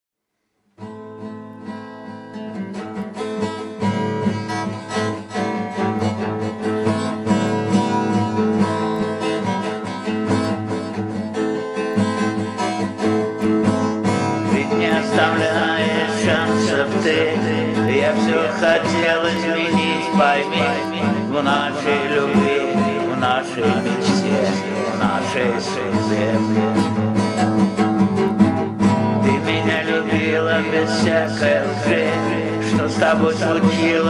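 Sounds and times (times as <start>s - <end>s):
guitar-led backing music: 0.8s - 34.0s
man singing: 13.8s - 27.6s, 29.2s - 34.0s.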